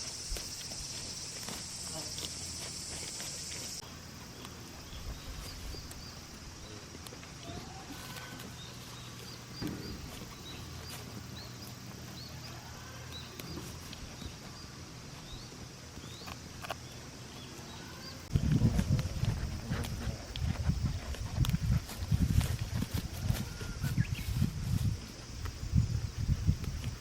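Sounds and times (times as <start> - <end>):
soft hoof steps: 0.0 - 27.0.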